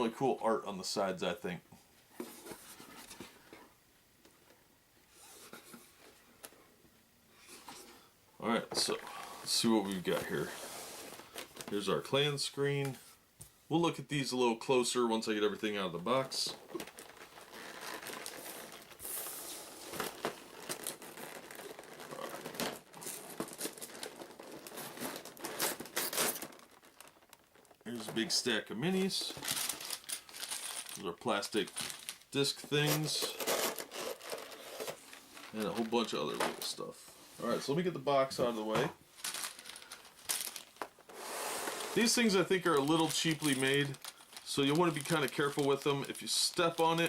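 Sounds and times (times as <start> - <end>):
packaging crinkling and rustling: 8.8 - 11.9, 16.1 - 47.0.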